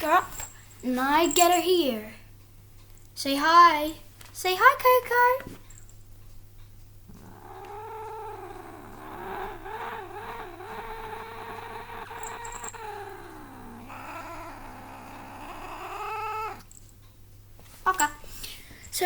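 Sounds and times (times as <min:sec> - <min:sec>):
cat yowling: 0:07.2 - 0:16.7.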